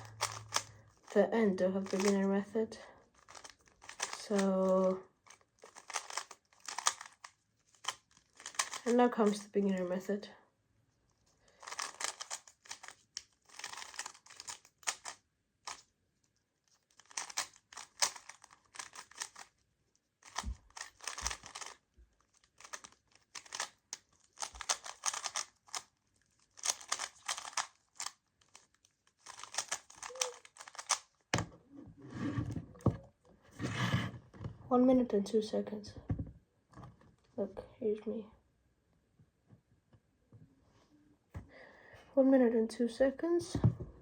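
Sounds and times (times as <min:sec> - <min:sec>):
puzzle cube clicking: 0:00.0 - 0:01.0, 0:01.8 - 0:02.2, 0:03.2 - 0:04.4, 0:05.3 - 0:09.5, 0:11.6 - 0:15.8, 0:17.0 - 0:19.5, 0:20.2 - 0:31.5.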